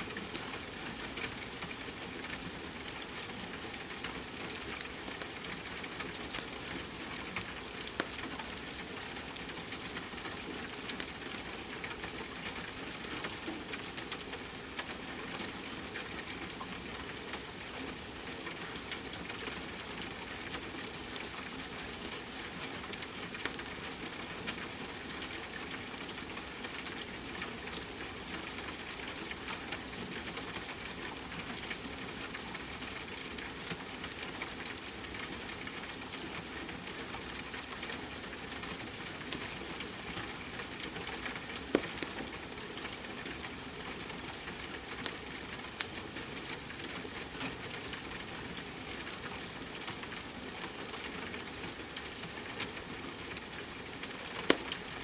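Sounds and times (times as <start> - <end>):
rain hiss: 0.0 - 55.0
fire crackling and popping: 41.6 - 42.3, 54.2 - 54.9.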